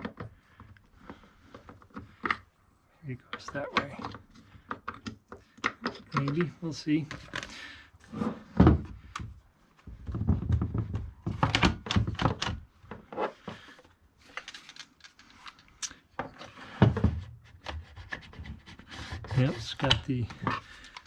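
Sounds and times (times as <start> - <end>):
plastic and metal knocks and rattles: 8.5 - 13.6.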